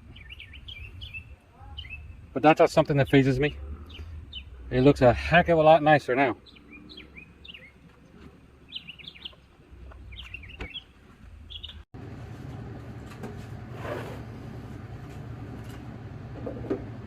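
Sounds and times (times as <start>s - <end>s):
birds chirping: 0.0s - 11.9s.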